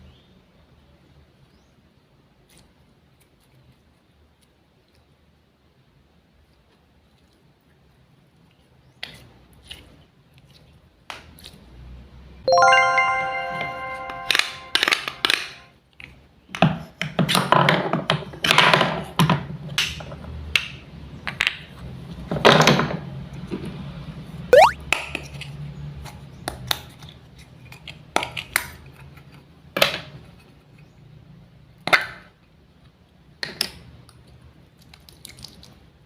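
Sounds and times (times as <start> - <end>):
ringing chime: 12.5 - 15.6.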